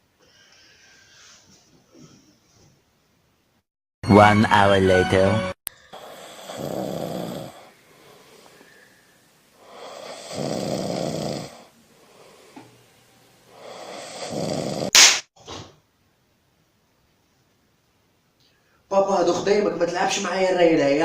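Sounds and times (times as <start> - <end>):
quiet breaths: 0.1 - 2.9, 5.7 - 14.9, 18.4 - 18.9
person snoring: 5.8 - 8.5, 9.6 - 12.7, 13.5 - 14.9
sharp loud burst: 14.9 - 15.3.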